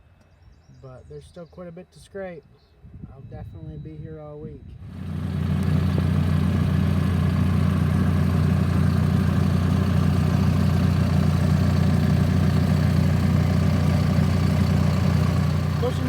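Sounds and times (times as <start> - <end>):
bulldozer diesel engine running: 4.9 - 16.0.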